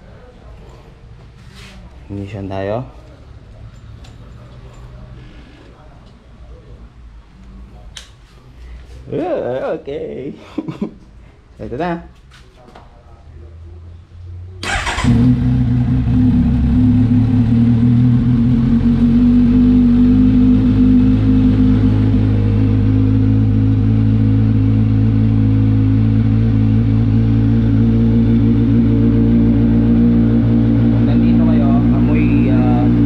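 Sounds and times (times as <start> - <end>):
motorcycle engine idling: 14.6 - 33.0.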